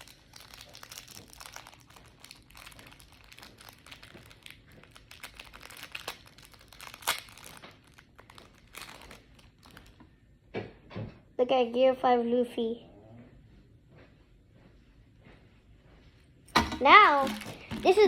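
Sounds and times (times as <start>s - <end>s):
plastic packaging crinkling: 0.0s - 10.0s, 16.6s - 18.0s.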